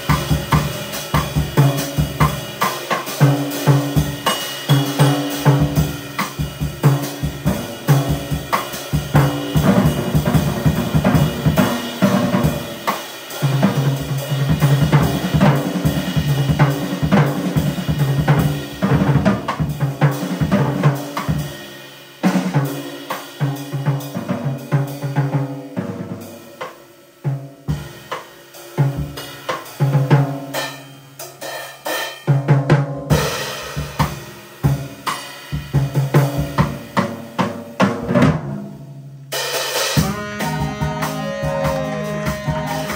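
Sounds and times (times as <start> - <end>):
drum kit playing: 0.0 - 42.9
live band playing jazz: 39.9 - 42.9.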